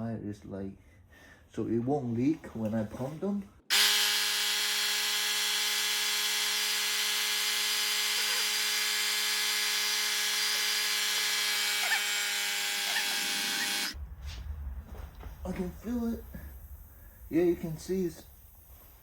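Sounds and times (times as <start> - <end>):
air pump running with hiss: 3.7 - 14.0.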